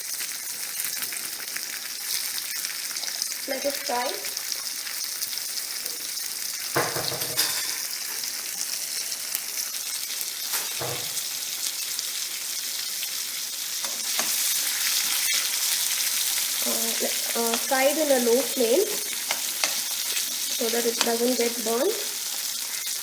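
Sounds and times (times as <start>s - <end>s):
tomato sizzling in oil: 0.0s - 23.0s
spoon scraping pan: 13.8s - 23.0s.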